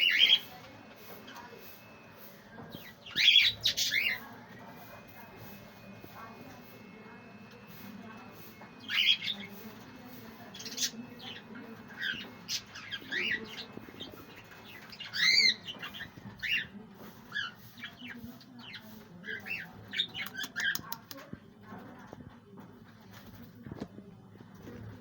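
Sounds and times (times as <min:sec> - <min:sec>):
budgerigars squawking and chirping: 0:00.0 - 0:00.5, 0:02.7 - 0:04.3, 0:08.8 - 0:09.6, 0:10.5 - 0:16.7.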